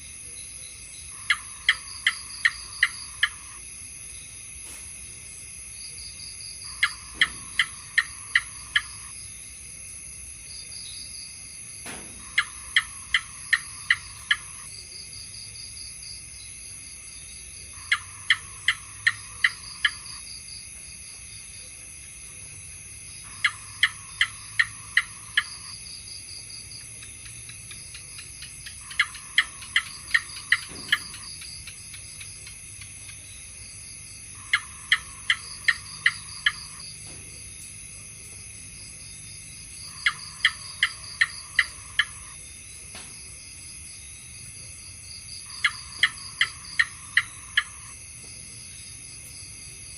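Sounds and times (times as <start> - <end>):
gecko chirping: 1.1 - 3.6, 6.6 - 9.1, 12.2 - 14.7, 17.7 - 20.2, 23.2 - 26.1, 27.0 - 33.3, 34.4 - 36.9, 39.7 - 42.4, 45.4 - 48.0.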